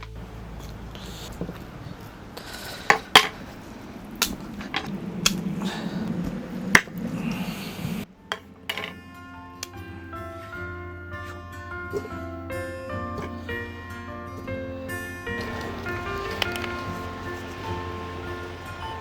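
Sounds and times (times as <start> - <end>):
low rushing noise: 3.4 - 8.1
metal cookware clicks and knocks: 8.3 - 9.0.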